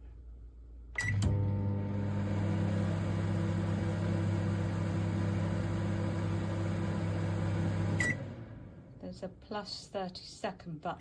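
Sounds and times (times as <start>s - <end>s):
microwave oven humming: 1.0s - 9.0s.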